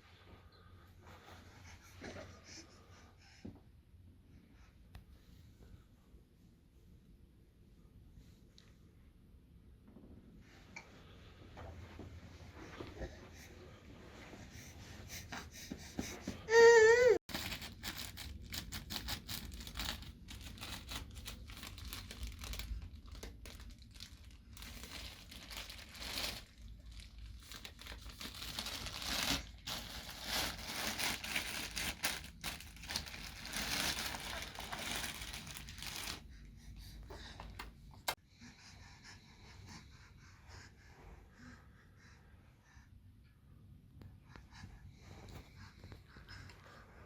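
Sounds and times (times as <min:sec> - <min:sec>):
paper or plastic crinkling: 0:17.3 - 0:36.2.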